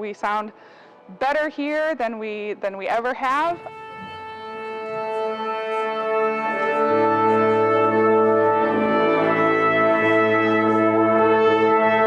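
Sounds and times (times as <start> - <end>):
brass section sustained chords: 3.2 - 12.0
low bass note: 3.5 - 8.6.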